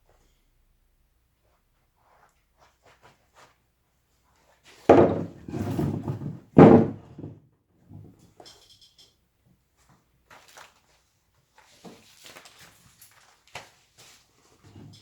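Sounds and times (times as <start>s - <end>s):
sharp wooden knocks: 4.9s - 5.4s, 6.6s - 7.4s
rough scraping cut in wood: 4.9s - 7.3s.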